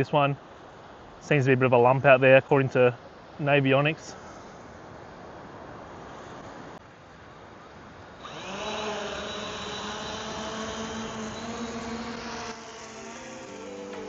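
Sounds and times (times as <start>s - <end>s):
drone propeller buzz: 8.2s - 14.0s.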